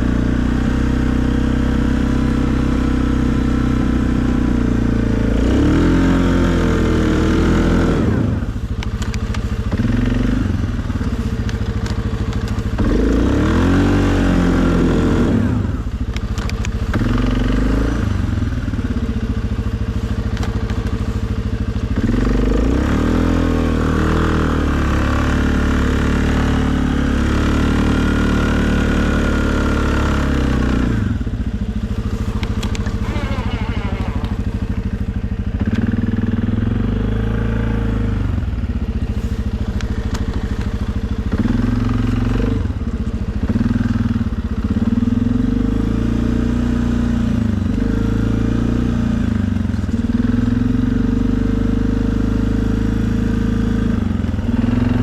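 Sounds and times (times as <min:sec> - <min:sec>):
atv engine revving under load: 0:00.0 - 0:55.0.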